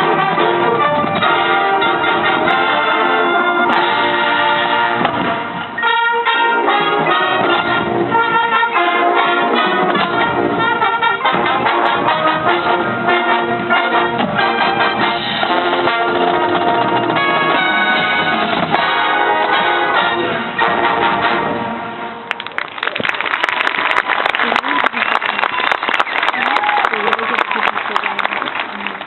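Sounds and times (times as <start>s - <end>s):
marching band playing: 0.0s - 22.4s
trumpets and trombones: 0.0s - 22.4s.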